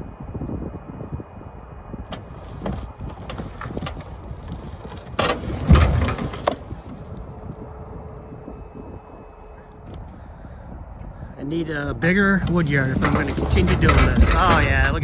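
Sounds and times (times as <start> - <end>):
wind buffeting microphone: 0.0 - 15.0
logs knocking and thudding: 2.1 - 7.5, 12.4 - 15.0.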